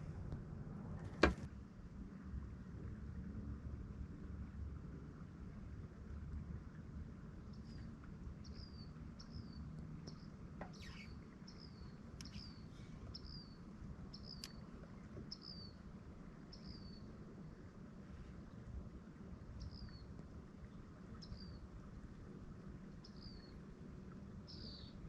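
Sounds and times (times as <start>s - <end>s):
low steady rumble: 0.0s - 25.0s
bird chirping: 8.4s - 14.6s, 24.5s - 25.0s
faint clicks: 12.1s - 12.5s, 14.2s - 14.6s.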